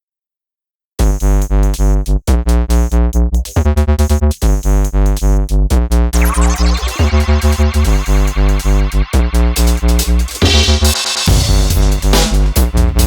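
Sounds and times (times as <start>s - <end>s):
drum machine beat with heavy bass: 1.0s - 13.0s
sweeping synth notes: 6.2s - 12.0s
synthesizer keyboard chords: 6.2s - 12.5s.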